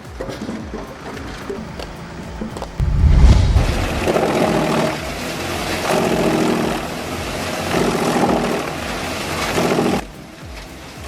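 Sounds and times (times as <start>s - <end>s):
loud low thump: 2.7s - 4.2s.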